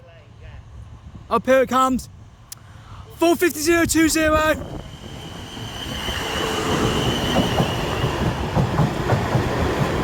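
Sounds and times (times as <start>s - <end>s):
train rumble: 3.2s - 10.0s.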